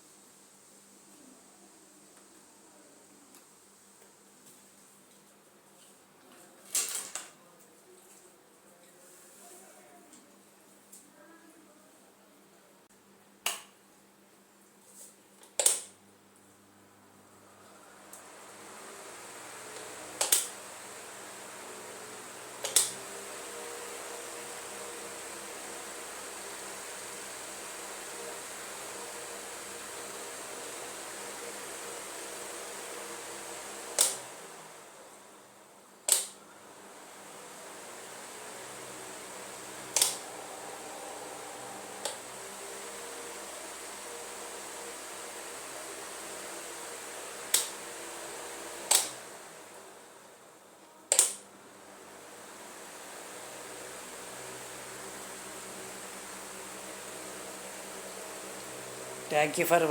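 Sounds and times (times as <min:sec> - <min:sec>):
faint motor hum: 0:16.0 - 0:59.9
fan blades rushing air: 0:17.6 - 0:35.2, 0:36.8 - 0:50.3, 0:51.8 - 0:59.9
fan switch clicks: 0:19.8 - 0:20.6, 0:22.6 - 0:23.0, 0:36.1 - 0:36.4, 0:39.9 - 0:40.3, 0:48.9 - 0:49.2, 0:51.1 - 0:51.4.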